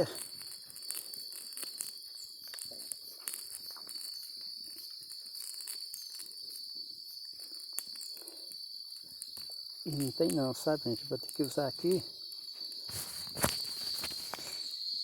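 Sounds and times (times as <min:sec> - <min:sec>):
light clicks and rustles: 0:00.0 - 0:06.6, 0:12.7 - 0:14.6
insects droning: 0:00.0 - 0:15.0.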